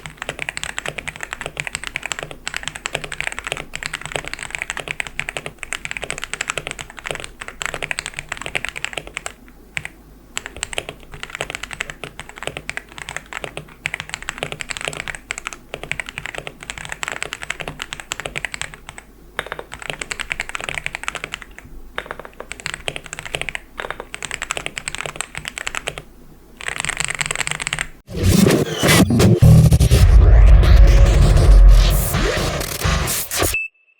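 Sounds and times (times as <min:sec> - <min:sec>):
mechanical keyboard typing: 0:00.0 - 0:28.0
loud music: 0:28.1 - 0:33.6.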